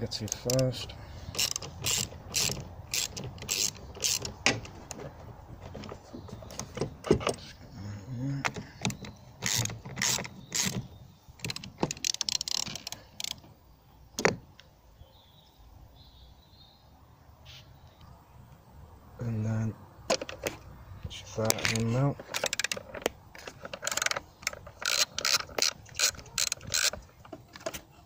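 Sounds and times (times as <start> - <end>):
ratchet wrench clicking: 0.3 - 0.6, 1.3 - 4.4, 9.4 - 10.8, 11.5 - 13.4, 23.8 - 27.0.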